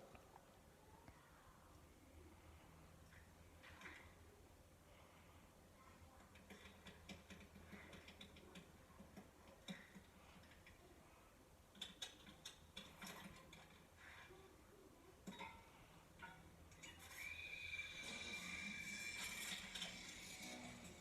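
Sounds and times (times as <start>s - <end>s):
faint small clicks and ticks: 6.1s - 11.0s, 11.7s - 14.3s.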